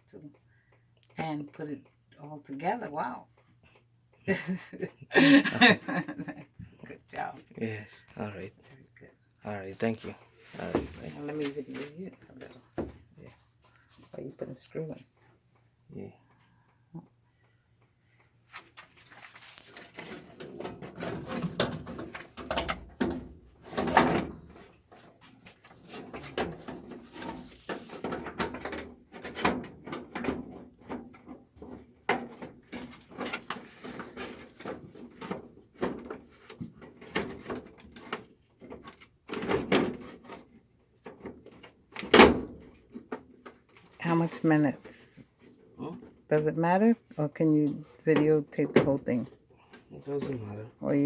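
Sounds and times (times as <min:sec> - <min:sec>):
metal panels knocking and rattling: 0:19.9 - 0:40.4.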